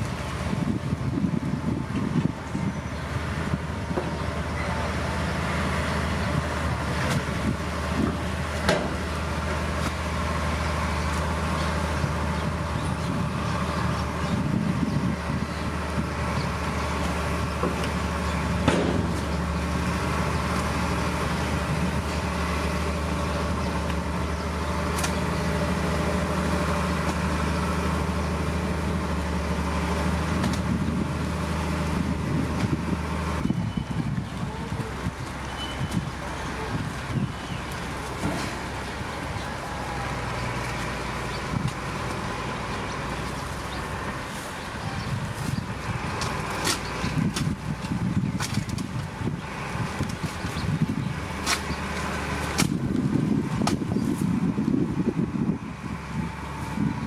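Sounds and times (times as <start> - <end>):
heavy diesel engine running: 0.0 - 57.0
sharp knocks: 18.6 - 19.2.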